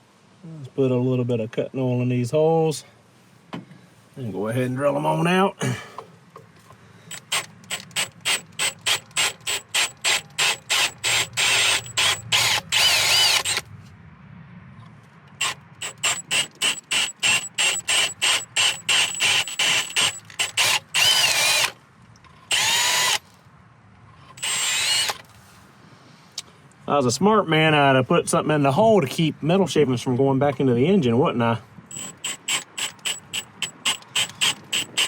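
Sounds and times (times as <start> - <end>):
power drill bursts: 7.1 - 13.6, 15.4 - 21.8, 22.5 - 23.4, 24.3 - 25.3, 31.9 - 35.0.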